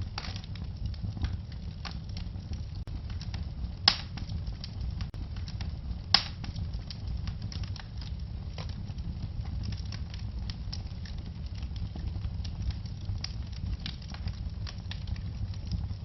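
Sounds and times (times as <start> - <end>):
loud sharp pops of fire: 0.0 - 16.0
wood fire crackling: 0.0 - 16.0.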